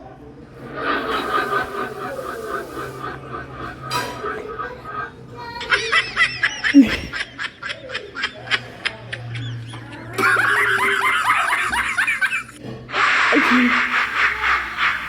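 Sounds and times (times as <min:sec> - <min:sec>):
high-pitched cartoon laughter: 0:02.0 - 0:08.4, 0:09.6 - 0:15.0.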